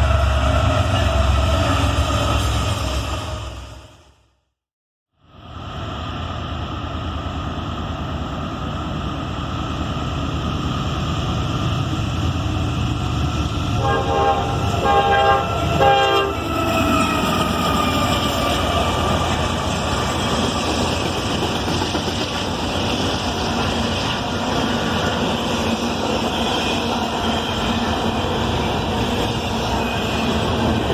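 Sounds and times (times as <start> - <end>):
train rumbling past: 0.0 - 4.3, 5.3 - 30.9
locomotive horn blasts: 13.8 - 16.4.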